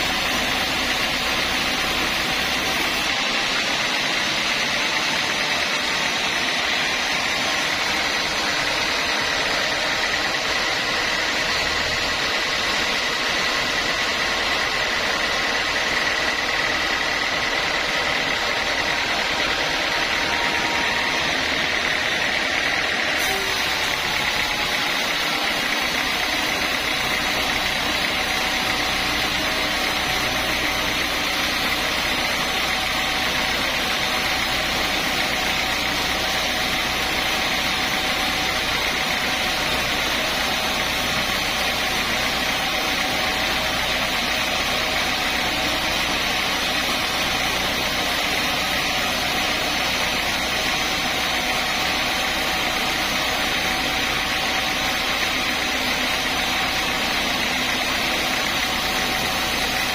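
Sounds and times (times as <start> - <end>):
hiss: 0.0 - 19.6, 22.8 - 59.9
sawmill machinery drone: 0.0 - 59.9.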